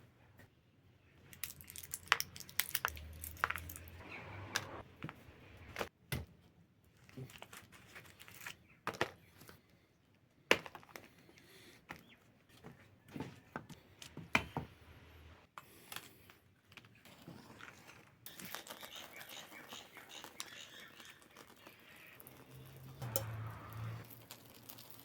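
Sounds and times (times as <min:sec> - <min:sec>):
dry material crinkling and tearing: 0:01.3 - 0:04.0, 0:07.0 - 0:08.8, 0:24.0 - 0:25.0
sharp snaps and knocks: 0:01.3 - 0:06.3.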